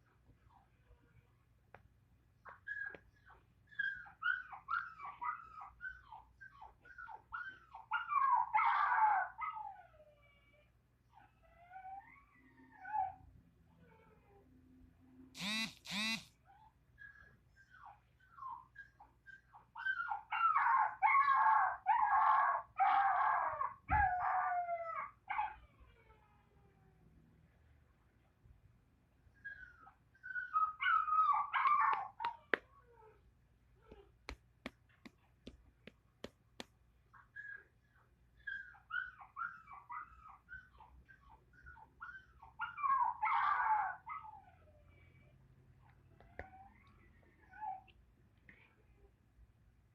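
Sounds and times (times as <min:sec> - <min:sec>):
puppy whimpering: 0:02.4 - 0:13.2, 0:13.8 - 0:14.4, 0:15.4 - 0:26.8, 0:29.4 - 0:33.2, 0:37.2 - 0:45.3, 0:46.1 - 0:47.9
puppy howling: 0:03.7 - 0:13.2, 0:19.8 - 0:26.6, 0:29.4 - 0:33.2, 0:38.4 - 0:44.8.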